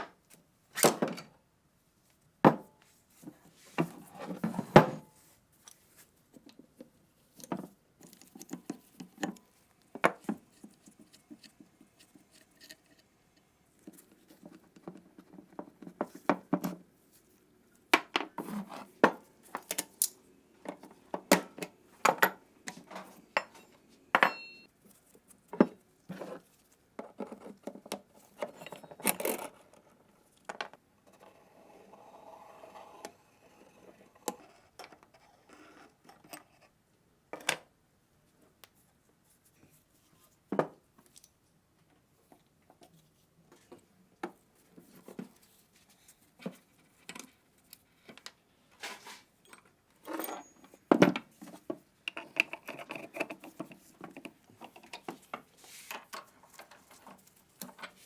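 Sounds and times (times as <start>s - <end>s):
ringing metal clink: 24.2s - 24.7s.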